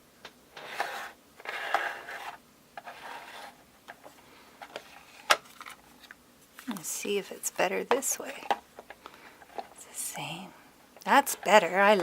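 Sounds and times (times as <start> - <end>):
plastic toy parts scraping: 0.6 - 5.8.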